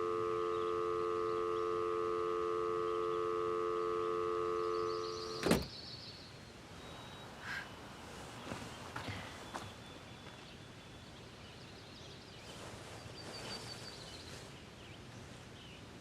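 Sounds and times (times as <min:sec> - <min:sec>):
telephone dial tone: 0:00.0 - 0:05.6
telephone receiver hung up: 0:04.6 - 0:05.7.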